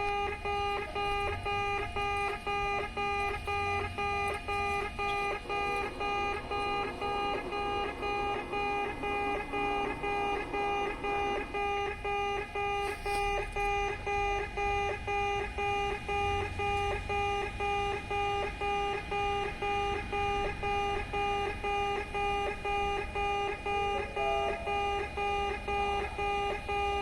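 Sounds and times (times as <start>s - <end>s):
electronic crossing alarm beeping: 0.0s - 27.0s.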